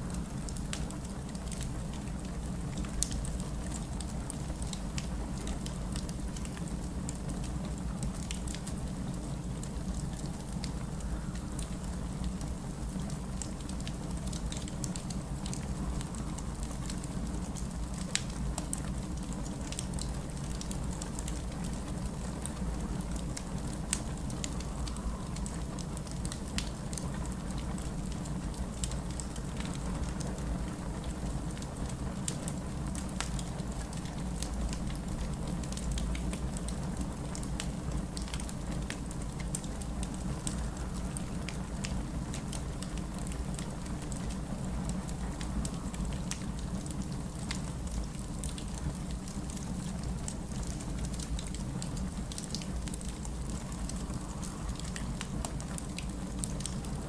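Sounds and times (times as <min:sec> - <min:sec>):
wood fire crackling: 0:00.1 - 0:57.0.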